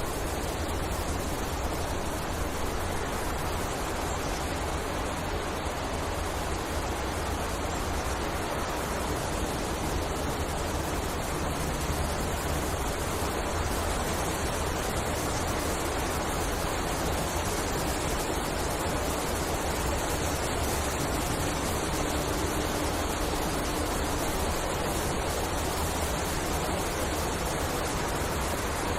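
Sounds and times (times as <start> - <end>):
wind through trees: 0.0 - 28.9.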